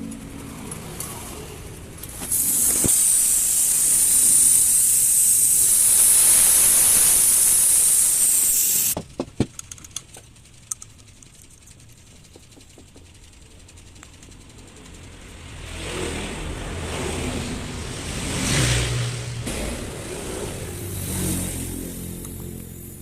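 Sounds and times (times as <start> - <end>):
compressed gas hissing through tubing: 2.0 - 9.0.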